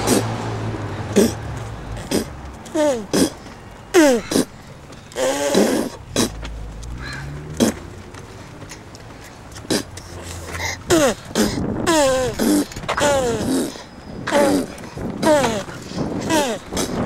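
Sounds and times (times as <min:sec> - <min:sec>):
baby blowing a raspberry: 0:02.0 - 0:03.4, 0:05.2 - 0:06.4, 0:09.7 - 0:09.9, 0:10.6 - 0:17.0
baby squealing: 0:10.6 - 0:17.0.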